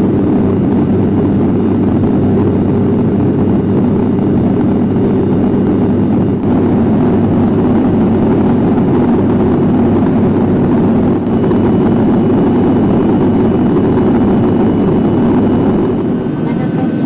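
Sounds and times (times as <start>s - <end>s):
turboprop engine drone in cabin: 0.0s - 17.0s.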